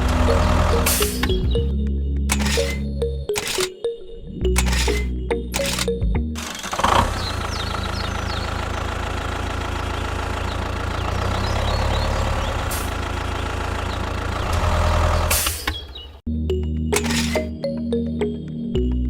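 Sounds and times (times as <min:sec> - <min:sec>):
engine running: 0:02.3 - 0:03.7, 0:04.6 - 0:15.4, 0:17.0 - 0:17.5.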